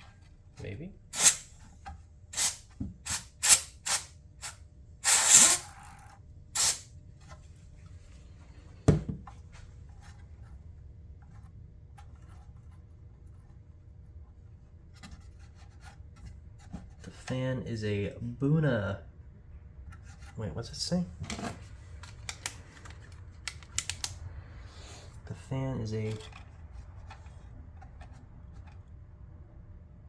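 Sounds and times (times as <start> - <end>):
compressed air hissing puffs: 1.2 - 1.6, 2.4 - 5.8, 6.6 - 6.8, 24.4 - 25.2.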